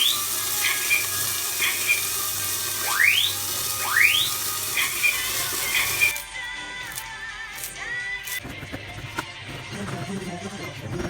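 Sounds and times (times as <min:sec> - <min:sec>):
fire alarm electronic tones: 0:02.8 - 0:05.2.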